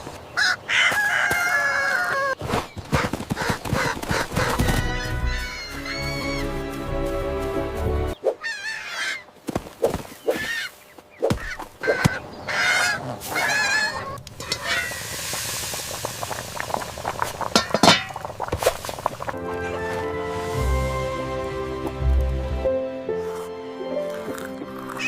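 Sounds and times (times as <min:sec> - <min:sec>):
chicken squawking: 0:03.0 - 0:06.5, 0:08.2 - 0:09.3, 0:10.3 - 0:15.0
background music: 0:04.4 - 0:08.2, 0:19.3 - 0:25.0.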